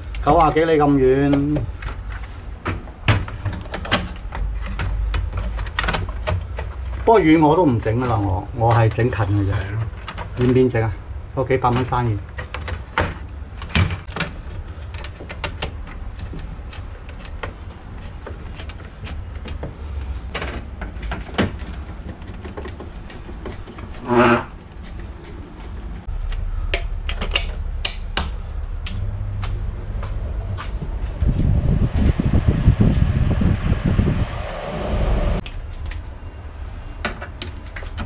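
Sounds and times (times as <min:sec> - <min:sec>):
steady low hum: 0:00.0 - 0:38.0
tools and parts clicking and tapping: 0:01.2 - 0:07.0, 0:11.7 - 0:29.0.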